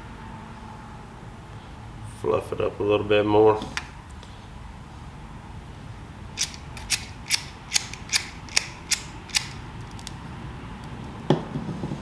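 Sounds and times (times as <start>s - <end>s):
flint wheel striker clicks: 6.4s - 10.2s.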